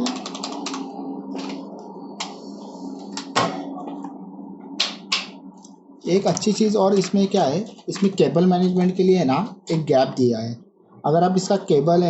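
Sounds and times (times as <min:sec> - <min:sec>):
keyboard clicks: 0:00.0 - 0:01.6
steady low hum: 0:00.0 - 0:12.0.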